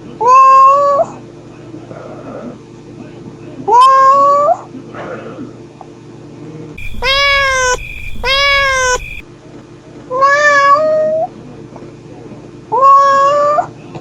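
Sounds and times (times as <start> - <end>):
cat meowing: 6.8 - 9.2.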